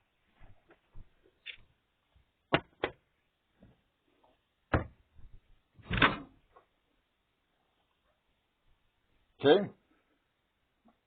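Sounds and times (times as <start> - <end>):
sharp knocks and clunks: 2.5 - 3.0, 4.7 - 5.0.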